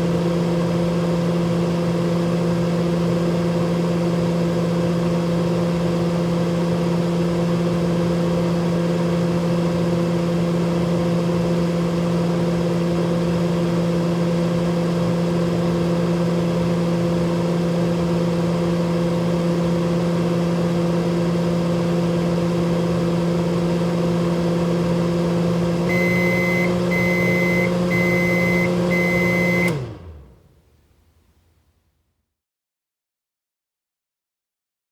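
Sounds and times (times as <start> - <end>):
microwave oven humming: 23.7 - 30.6
high beeps: 25.9 - 29.8.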